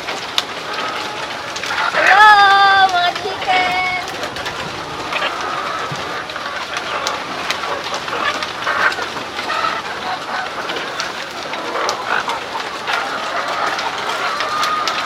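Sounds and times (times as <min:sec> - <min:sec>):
hens clucking and calling: 0:01.2 - 0:15.0
sharp clicks and rattles: 0:01.8 - 0:07.1.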